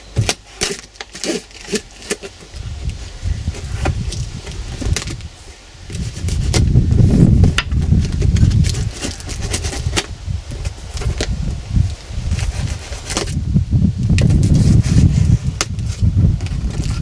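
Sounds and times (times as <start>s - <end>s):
cardboard flaps scraping: 0.0s - 17.0s
low rumble of box handling: 0.0s - 17.0s
knife slicing packing tape: 0.2s - 5.3s, 5.9s - 11.4s, 12.2s - 13.4s.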